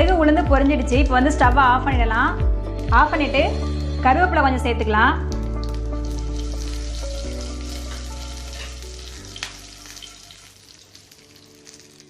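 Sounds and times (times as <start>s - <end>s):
leaves sizzling in hot oil: 5.4s - 12.0s.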